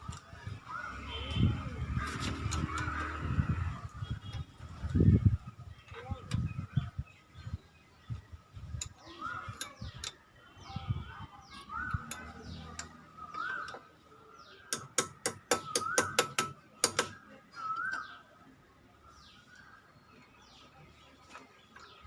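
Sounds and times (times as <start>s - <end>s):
faint high bird chirps: 0.4s - 22.0s
sharp metallic clicks: 14.7s - 17.2s.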